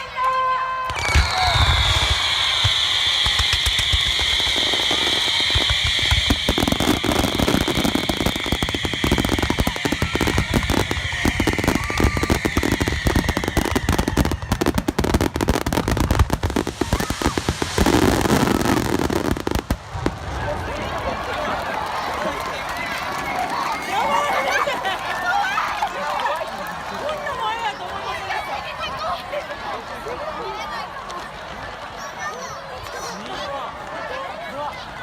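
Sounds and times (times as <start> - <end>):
fireworks crackling and popping: 0.3 - 26.3
fireworks low booms: 0.9 - 21.4.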